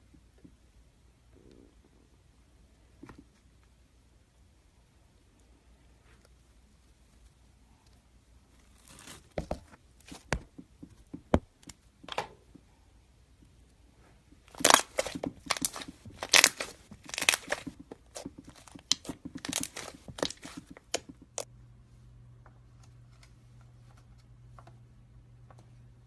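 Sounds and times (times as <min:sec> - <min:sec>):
slime crackling and popping: 0:14.5 - 0:21.5.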